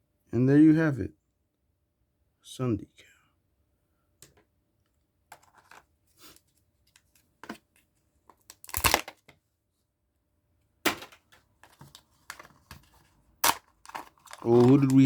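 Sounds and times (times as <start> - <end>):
plastic foil wrapper crinkling: 8.4 - 9.2, 13.4 - 15.0
wrapper tearing: 8.5 - 9.2, 13.4 - 15.0.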